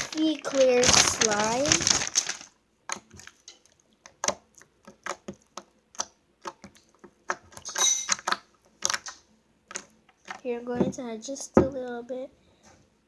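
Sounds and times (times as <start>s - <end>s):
slime clicking and popping: 2.9s - 10.4s.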